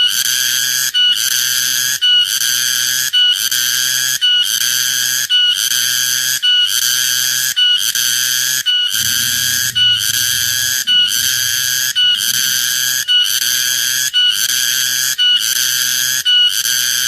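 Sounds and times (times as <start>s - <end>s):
cicada calling: 9.0s - 17.0s.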